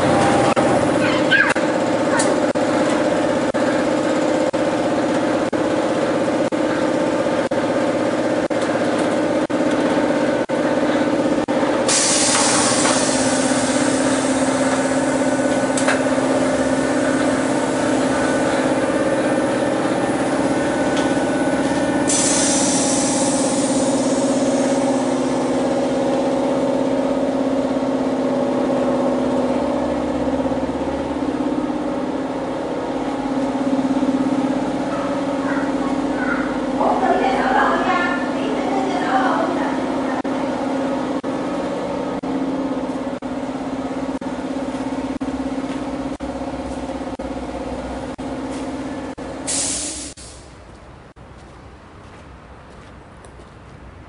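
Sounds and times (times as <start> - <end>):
factory machinery humming: 0.0 - 51.2
loud hiss: 11.9 - 15.5, 22.0 - 25.7, 49.4 - 50.6.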